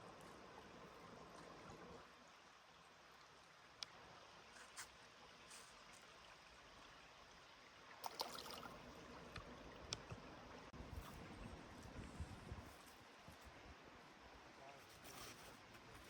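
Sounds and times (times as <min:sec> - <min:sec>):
running stream water: 0:00.0 - 0:16.0.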